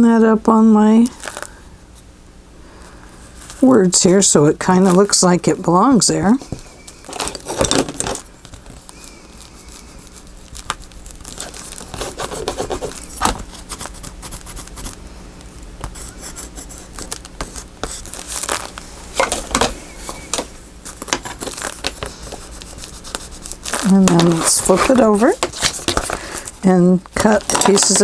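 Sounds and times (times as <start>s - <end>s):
paper and tape rustling: 6.2s - 15.0s, 15.8s - 28.0s.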